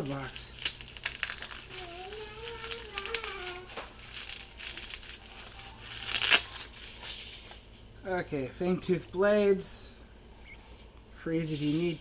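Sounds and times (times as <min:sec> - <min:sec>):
paper and plastic rustling: 0:00.0 - 0:07.9
faint high voice: 0:01.7 - 0:03.9.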